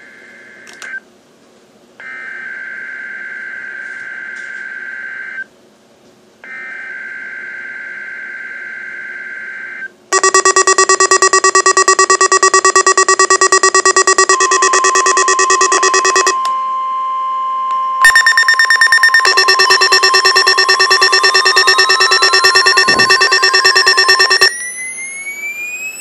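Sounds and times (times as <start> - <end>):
rapid pulsing alert beeps: 10.1 - 16.4, 18.0 - 24.5
raspy digital warbling: 18.1 - 24.5.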